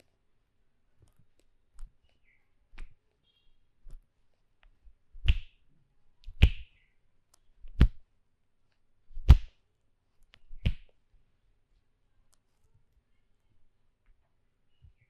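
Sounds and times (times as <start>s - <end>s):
hand slaps on body: 2.8s - 3.0s, 5.2s - 5.6s, 6.2s - 6.7s, 7.6s - 8.0s, 9.2s - 9.6s, 10.5s - 10.9s.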